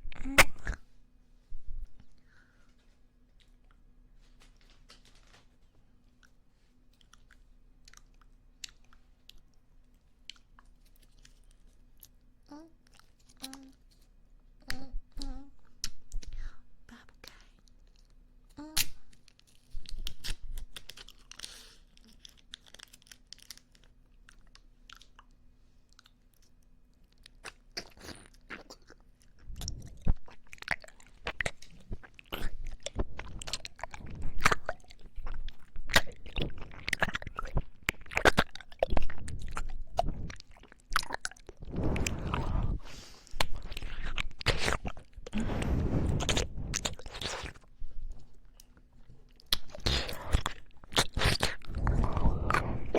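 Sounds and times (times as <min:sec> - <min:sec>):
chewing popping candy: 0:27.2 - 0:52.9.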